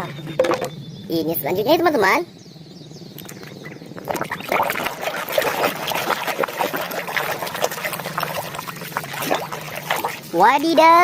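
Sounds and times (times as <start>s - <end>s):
water splashing and trickling: 3.2s - 11.0s.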